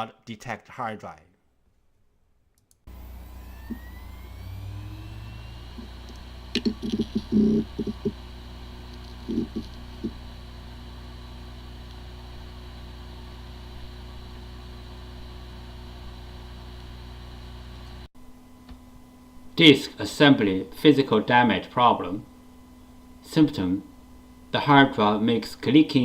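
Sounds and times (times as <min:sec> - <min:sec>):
hard drive spinning hum: 0:02.9 - 0:19.8.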